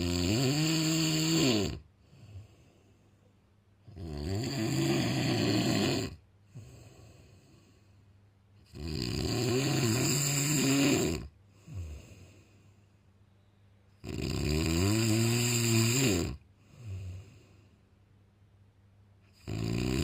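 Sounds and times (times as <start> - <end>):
person snoring: 0.0 - 2.9, 3.9 - 8.0, 8.6 - 12.8, 14.0 - 17.7, 19.3 - 20.0.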